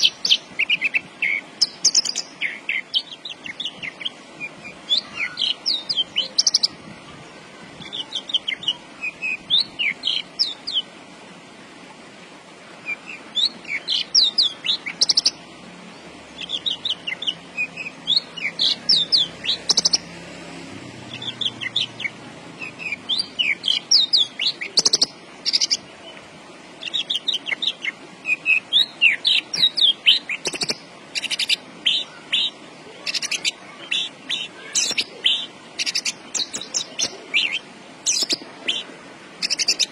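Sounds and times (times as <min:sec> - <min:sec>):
lark singing rapid chirps: 0:00.0 - 0:06.8, 0:12.9 - 0:15.4, 0:16.3 - 0:20.1, 0:21.0 - 0:25.9, 0:26.8 - 0:39.9.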